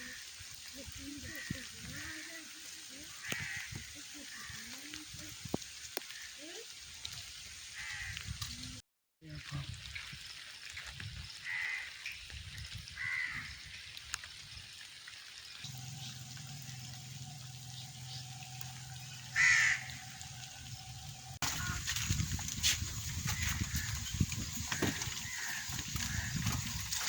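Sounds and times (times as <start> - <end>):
harsh bird calls: 15.6 - 21.9
steady low hum: 15.7 - 21.7.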